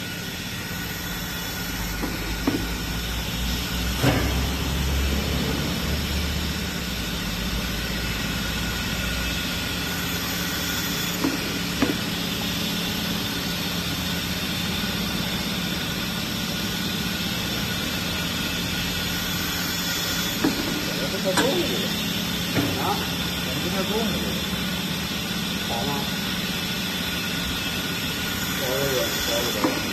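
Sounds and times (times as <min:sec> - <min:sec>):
bandsaw running: 0:19.0 - 0:29.9.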